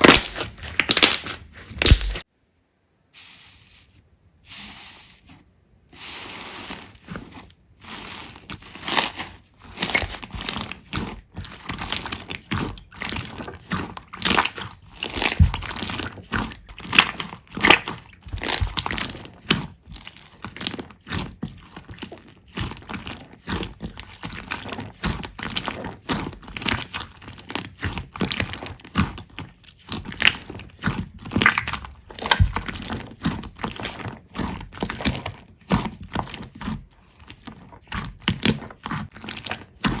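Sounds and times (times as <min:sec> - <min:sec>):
slime crackling and popping: 0:00.0 - 0:02.3, 0:07.9 - 0:40.0.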